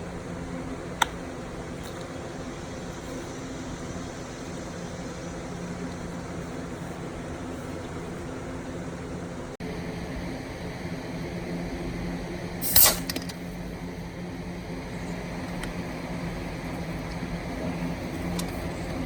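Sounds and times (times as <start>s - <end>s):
engine idling: 0.0s - 19.0s
loud burst of noise: 12.6s - 13.3s.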